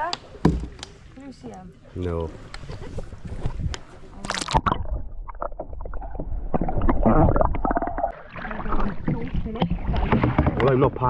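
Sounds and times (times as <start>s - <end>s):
kayak knocking against rocks: 0.0s - 0.9s, 9.0s - 11.0s.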